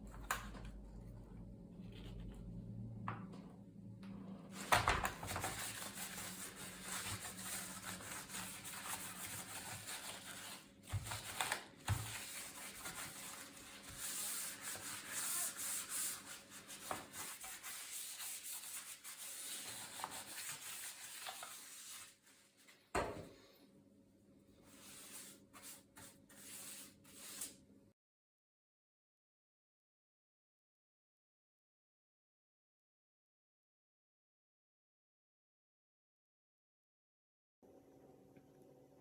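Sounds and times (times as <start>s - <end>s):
low hum: 0.0s - 4.5s.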